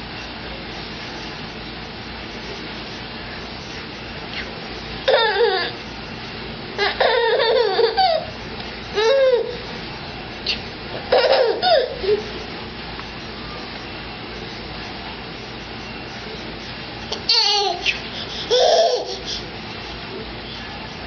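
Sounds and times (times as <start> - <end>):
baby laughing: 5.0 - 5.8, 6.8 - 8.3, 9.0 - 9.6, 10.5 - 12.3, 17.1 - 19.5.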